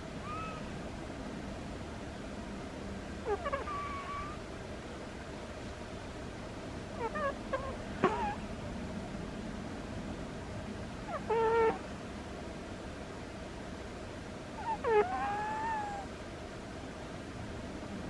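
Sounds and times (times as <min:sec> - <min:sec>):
cat snoring squeakily: 0:03.3 - 0:04.4, 0:07.0 - 0:08.4, 0:11.1 - 0:11.8, 0:14.6 - 0:16.0.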